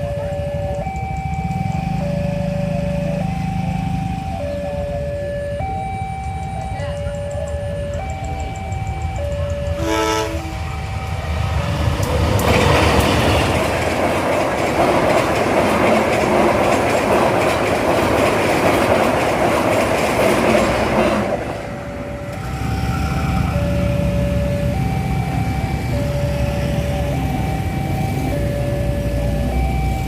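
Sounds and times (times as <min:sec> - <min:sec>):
two-note crossing warning siren: 0:00.0 - 0:14.6, 0:20.3 - 0:30.0
train horn blast: 0:09.8 - 0:10.8
train wheels clattering: 0:11.8 - 0:21.6.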